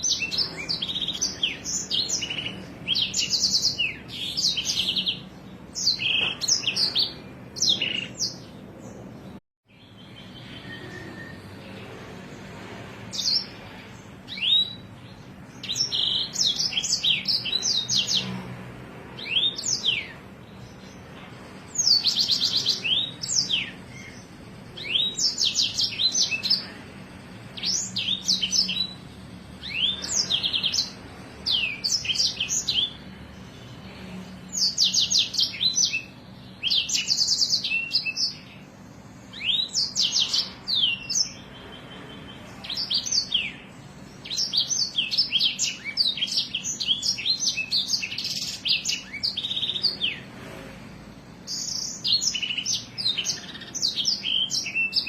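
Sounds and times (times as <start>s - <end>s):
songbird trilling and whistling: 0.0s - 8.5s, 14.3s - 18.3s, 21.7s - 26.8s, 27.5s - 29.0s, 29.6s - 33.0s, 34.5s - 38.6s, 39.3s - 50.3s, 51.5s - 55.0s.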